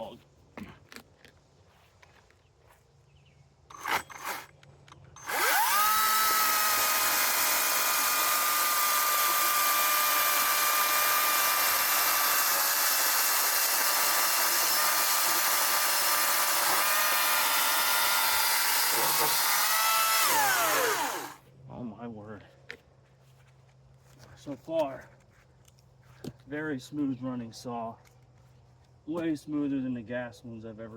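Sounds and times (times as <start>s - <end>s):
electric chainsaw whining: 3.7s - 4.5s, 5.2s - 21.4s.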